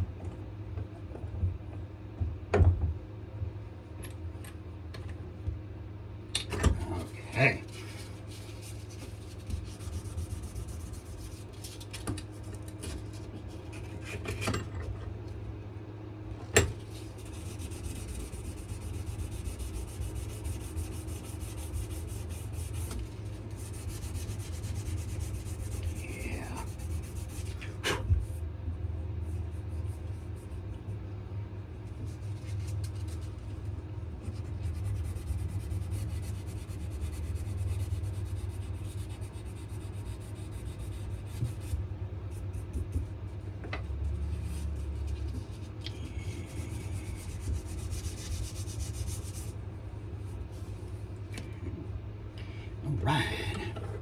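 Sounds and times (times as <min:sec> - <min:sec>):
steady low hum: 0:00.0 - 0:54.0
sandpaper rubbing on wood: 0:06.8 - 0:11.8, 0:16.9 - 0:28.4, 0:34.2 - 0:41.8, 0:44.1 - 0:49.6.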